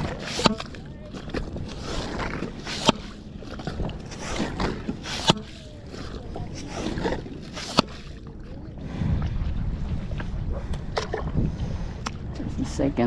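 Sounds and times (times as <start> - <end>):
wet sand and water squelching: 0.0 - 13.0.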